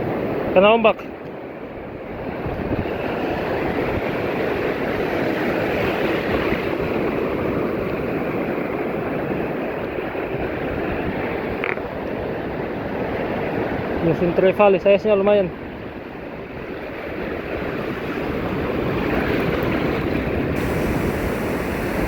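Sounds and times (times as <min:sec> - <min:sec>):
wind: 0:00.0 - 0:22.0
sea waves: 0:20.6 - 0:22.0.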